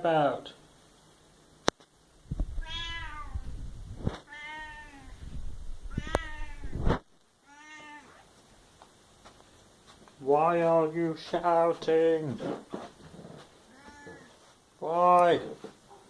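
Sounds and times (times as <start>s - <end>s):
cat meowing loudly: 2.6s - 3.5s, 4.2s - 5.2s, 5.9s - 6.8s, 7.4s - 8.3s, 13.7s - 14.4s.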